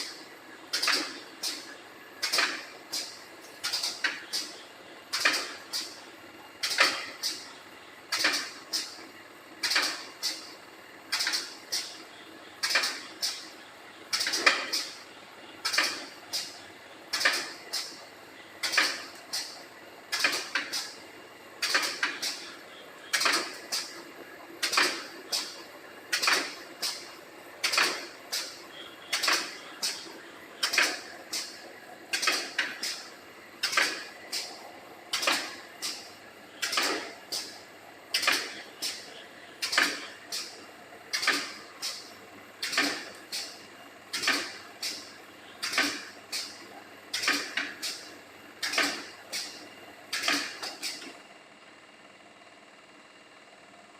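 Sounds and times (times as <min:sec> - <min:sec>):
welding machine mechanical clacks: 0:00.0 - 0:51.2.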